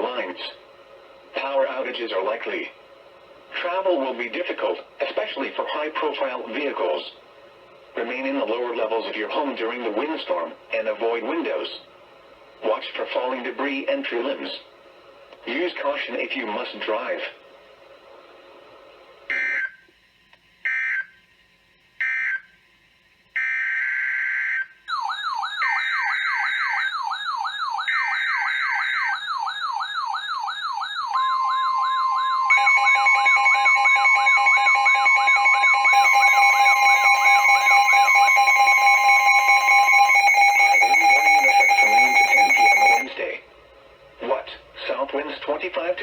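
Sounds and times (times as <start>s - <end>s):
steady two-tone alarm: 19.3s - 19.9s, 20.6s - 43.5s
steady alarm tone: 23.4s - 43.5s
siren-like alert tone sliding down: 24.9s - 43.1s
digital data bursts: 31.1s - 43.1s.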